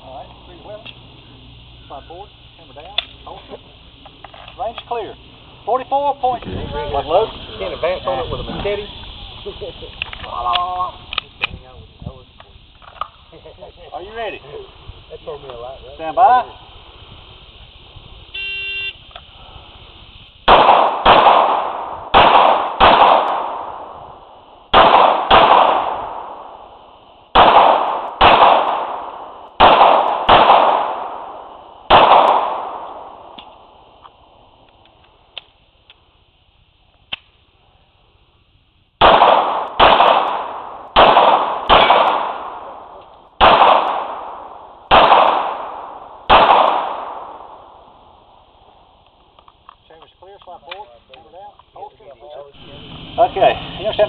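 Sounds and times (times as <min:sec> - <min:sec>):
pistol shots echoing: 0:20.5 - 0:24.0, 0:24.7 - 0:33.8, 0:39.0 - 0:47.9.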